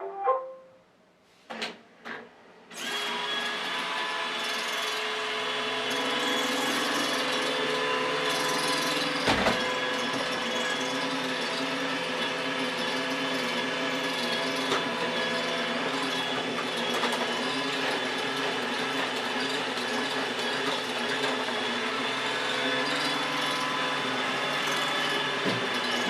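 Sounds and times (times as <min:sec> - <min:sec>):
robot vacuum motor whining: 0:06.2 - 0:26.0.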